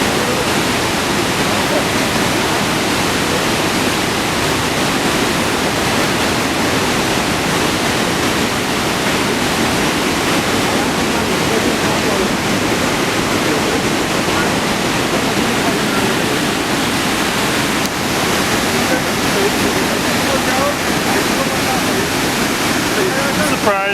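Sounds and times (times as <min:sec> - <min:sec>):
waterfall roaring: 0:00.0 - 0:23.9.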